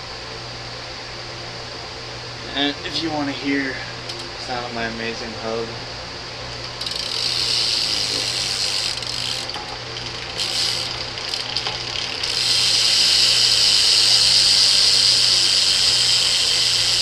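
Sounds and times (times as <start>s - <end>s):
bike hub ratcheting: 6.6s - 17.0s.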